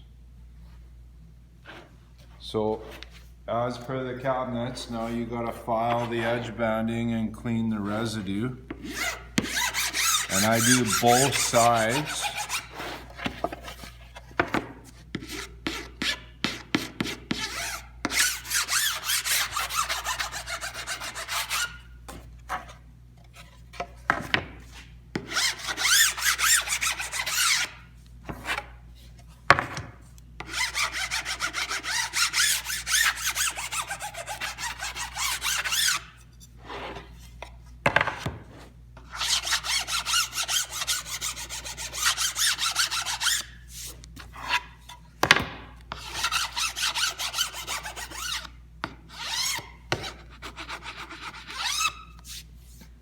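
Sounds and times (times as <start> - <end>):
hand file scraping wood: 4.9 - 6.6, 8.7 - 14.1, 14.9 - 23.9, 24.7 - 29.3, 30.4 - 37.2, 38.5 - 45.0, 45.9 - 48.5, 49.1 - 52.9.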